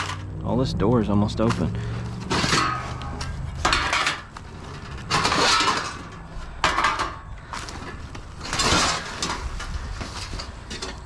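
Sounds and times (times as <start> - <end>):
scrap metal clattering and scraping: 0.0 - 0.3, 1.4 - 11.0
steady low rumble: 0.0 - 8.4.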